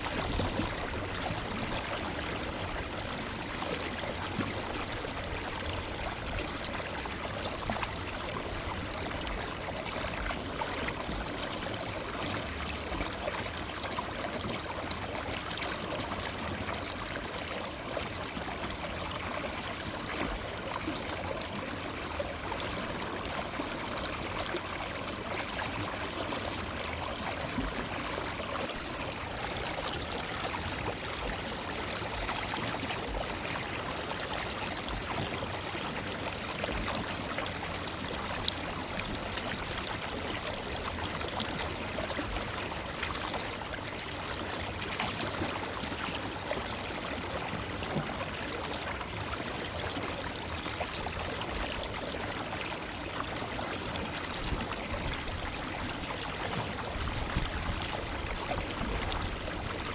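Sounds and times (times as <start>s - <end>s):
river flowing over rocks: 0.0s - 59.9s.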